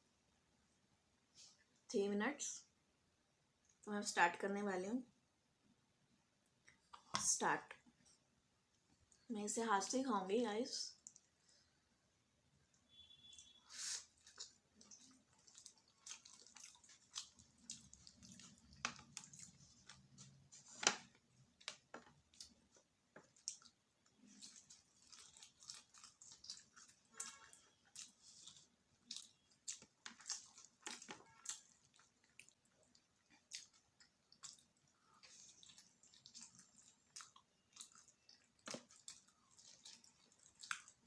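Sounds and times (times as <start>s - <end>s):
wet chewing of food: 11.0s - 11.6s, 12.9s - 41.0s.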